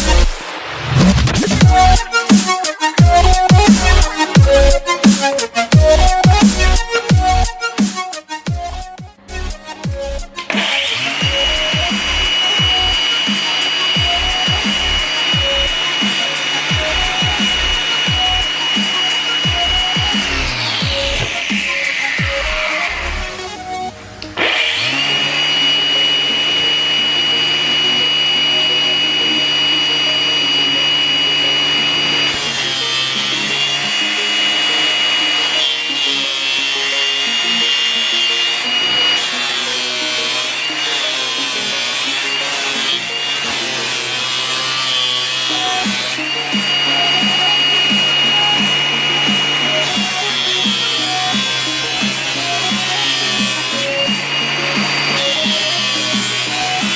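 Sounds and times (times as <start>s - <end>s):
background music with bass sweeps: 0.0s - 32.5s
angle grinder abrading wood: 0.0s - 56.9s.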